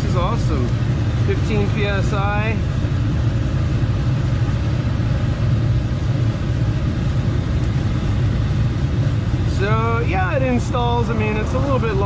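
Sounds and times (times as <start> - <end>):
air compressor running: 0.0 - 12.0.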